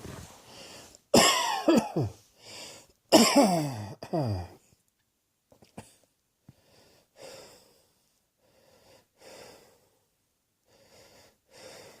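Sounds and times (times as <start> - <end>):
person breathing slowly: 0.3 - 1.0, 2.3 - 3.0, 6.5 - 12.0.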